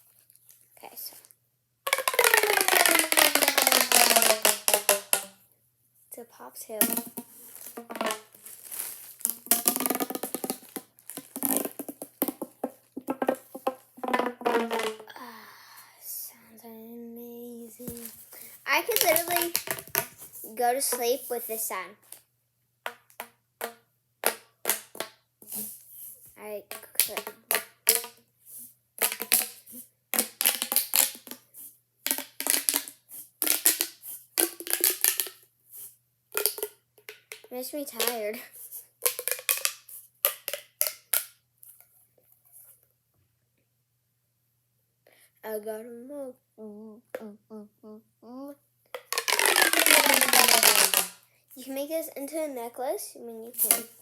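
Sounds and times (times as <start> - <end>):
plastic pop tube crackling: 1.9 - 5.4, 6.7 - 15.2, 17.8 - 21.3, 22.9 - 25.8, 26.7 - 28.3, 29.0 - 35.5, 36.3 - 41.9, 48.9 - 51.8, 53.6 - 54.0.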